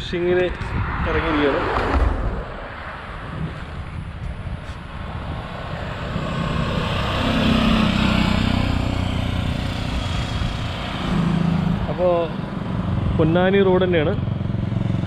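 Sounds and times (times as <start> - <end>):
road and wind noise: 0.0 - 15.0
vehicle engine running: 3.3 - 15.0.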